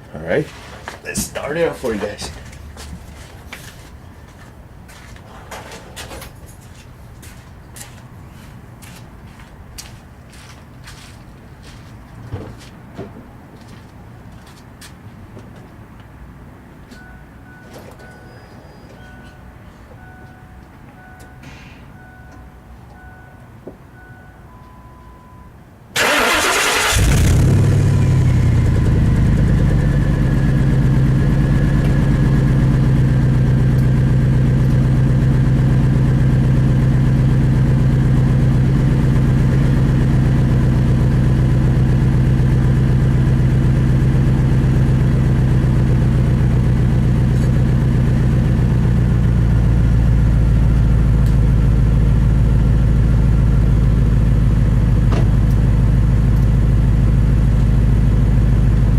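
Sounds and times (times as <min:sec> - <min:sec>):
engine cranking and starting: 0:26.0 - 0:29.6
loud engine idling: 0:26.0 - 0:58.9.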